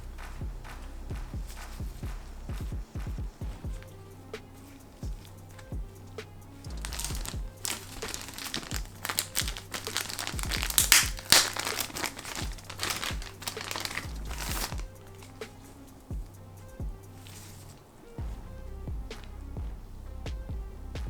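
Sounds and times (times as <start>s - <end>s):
background music with steady beat: 0.0s - 21.0s
packaging crinkling and rustling: 6.7s - 15.5s.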